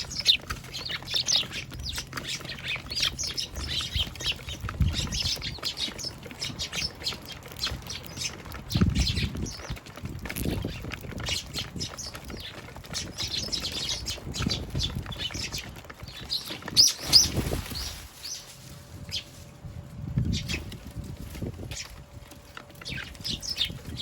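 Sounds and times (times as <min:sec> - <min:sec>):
fluttering wingbeats: 0:00.0 - 0:24.0
sparrows chirping: 0:00.0 - 0:24.0.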